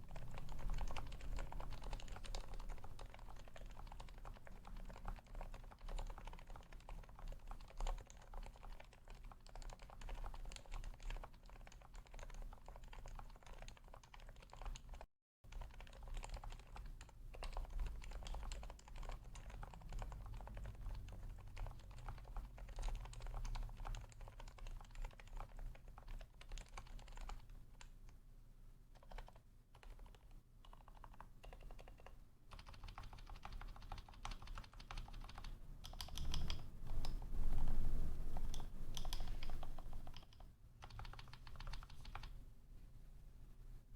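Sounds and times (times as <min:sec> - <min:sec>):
fast keyboard typing: 0:00.0 - 0:28.0, 0:29.0 - 0:42.4.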